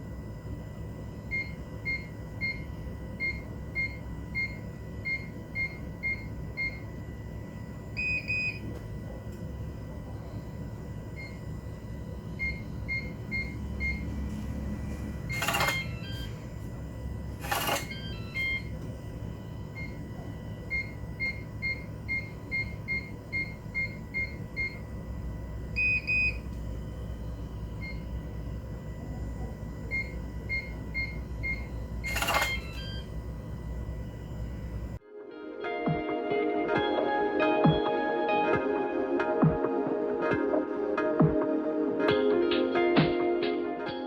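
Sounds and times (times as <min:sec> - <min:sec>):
door lock keypad beeps: 0:15.3 - 0:16.3, 0:17.4 - 0:18.8, 0:29.9 - 0:33.1
motorized lock bolt: 0:17.4 - 0:18.0.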